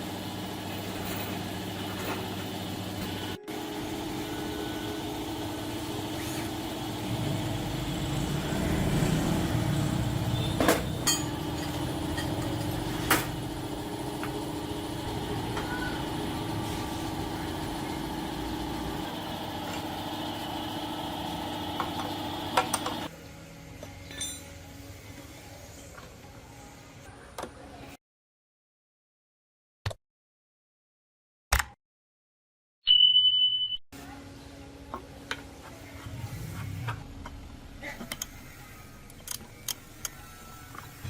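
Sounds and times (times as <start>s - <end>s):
engine running steadily: 0.0s - 23.1s, 36.0s - 38.3s.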